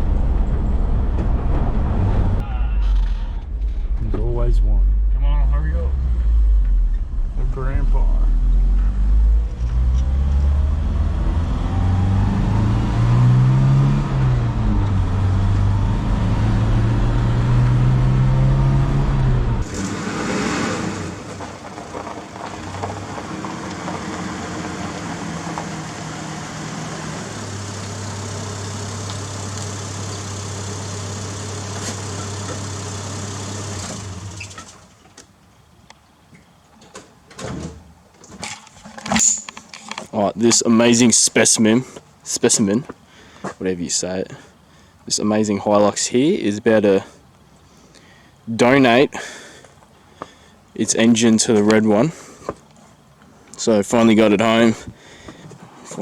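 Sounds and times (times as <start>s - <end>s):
petrol engine revving: 0.0s - 34.9s.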